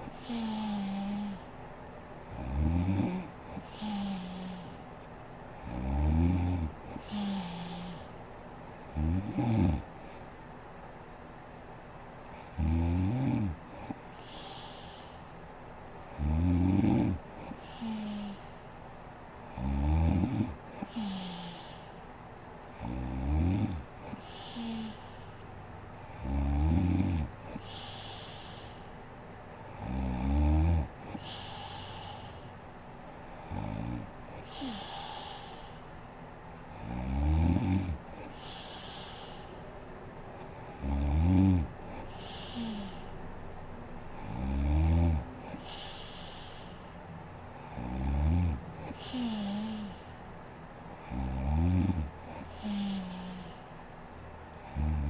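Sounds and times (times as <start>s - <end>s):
breathy hiss: 0.0s - 1.6s, 3.0s - 5.0s, 6.9s - 8.2s, 13.7s - 15.4s, 17.2s - 18.8s, 20.3s - 22.2s, 24.0s - 25.5s, 27.4s - 29.1s, 31.0s - 33.7s, 34.3s - 36.1s, 37.7s - 39.8s, 41.8s - 43.4s, 45.4s - 48.0s, 48.8s - 50.4s, 51.0s - 53.8s
woman snoring: 0.0s - 1.6s, 2.3s - 4.9s, 5.6s - 8.2s, 8.9s - 9.9s, 12.4s - 15.3s, 16.1s - 18.7s, 19.5s - 22.1s, 22.8s - 25.4s, 26.2s - 29.0s, 29.7s - 32.6s, 33.3s - 36.0s, 36.7s - 39.6s, 40.7s - 43.2s, 44.2s - 46.9s, 47.6s - 50.3s, 51.0s - 53.8s, 54.6s - 55.0s.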